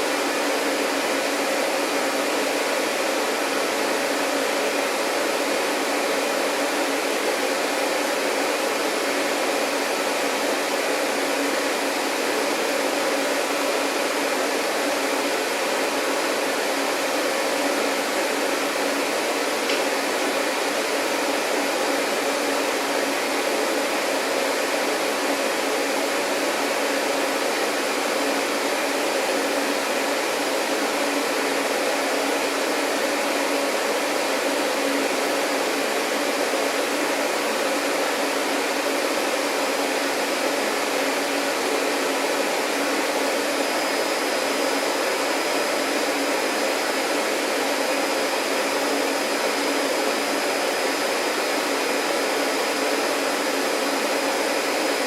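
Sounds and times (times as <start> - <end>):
vacuum cleaner running: 0.0 - 55.0.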